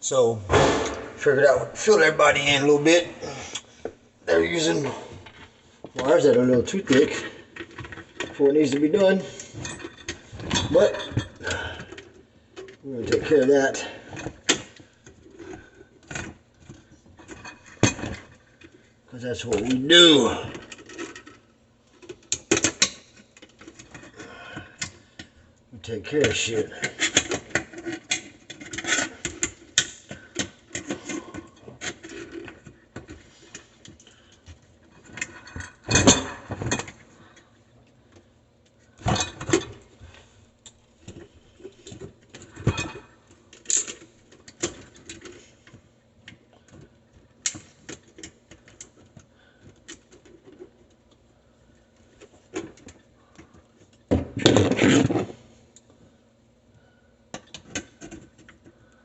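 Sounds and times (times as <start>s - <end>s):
tools clicking and rattling: 26.2s - 34.2s, 40.6s - 46.8s.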